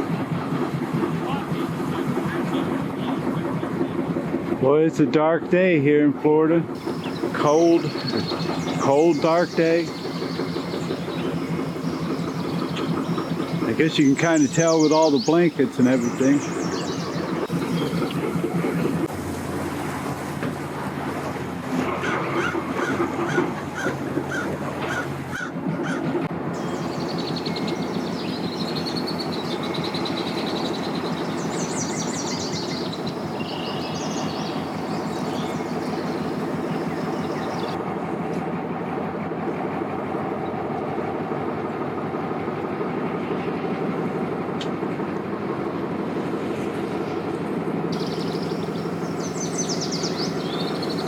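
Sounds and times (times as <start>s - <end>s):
engine drone: 0.0s - 51.0s
birds chirping: 6.8s - 18.6s, 26.6s - 37.8s, 47.9s - 51.0s.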